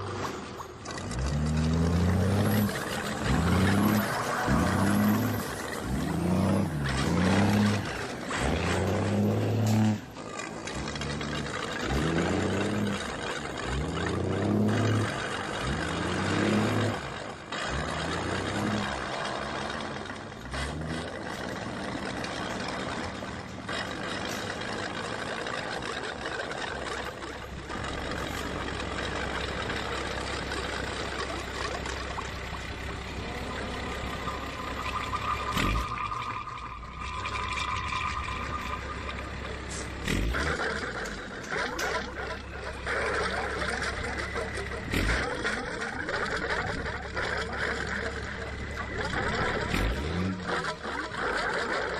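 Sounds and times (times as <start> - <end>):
diesel truck engine rumbling: 0.0 - 51.9.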